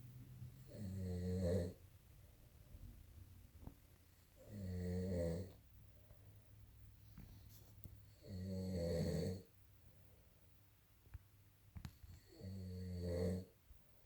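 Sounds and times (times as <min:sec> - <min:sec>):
man snoring: 0:00.6 - 0:01.8, 0:04.4 - 0:05.6, 0:08.1 - 0:09.5, 0:12.2 - 0:13.5.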